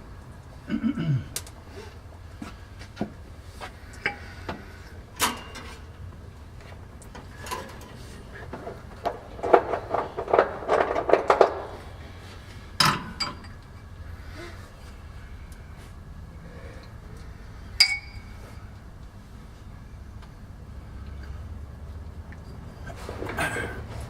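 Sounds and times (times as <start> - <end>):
metal tools clinking and knocking: 12.8 - 13.8, 17.8 - 18.4.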